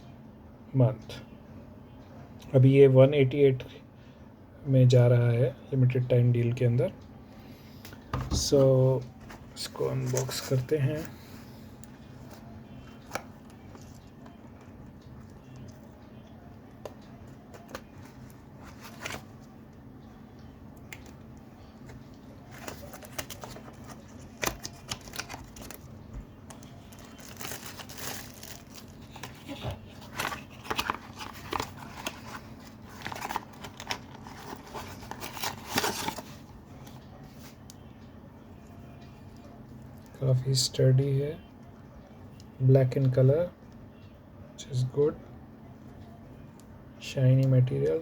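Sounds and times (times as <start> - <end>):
packaging crinkling and tearing: 22.4 - 36.4.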